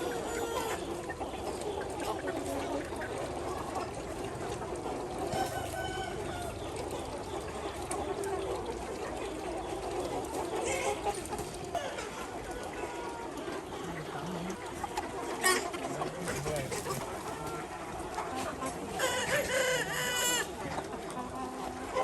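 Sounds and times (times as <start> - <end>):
chickens clucking: 0.0 - 22.0
rooster crowing: 5.4 - 6.6.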